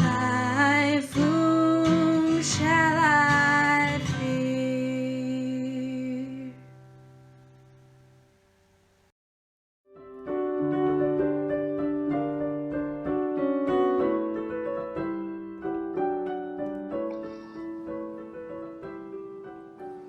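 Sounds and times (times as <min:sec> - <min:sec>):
slow solo piano: 0:09.9 - 0:20.0.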